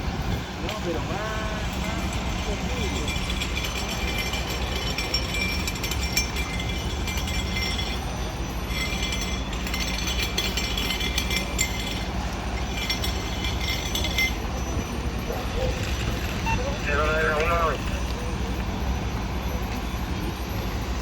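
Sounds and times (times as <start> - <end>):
metallic clinking and rattling: 1.7 - 18.3.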